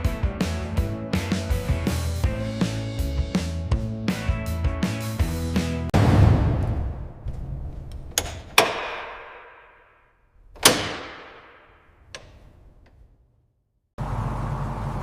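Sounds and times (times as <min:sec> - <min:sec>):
heavy echoing thuds: 0:06.0 - 0:12.1.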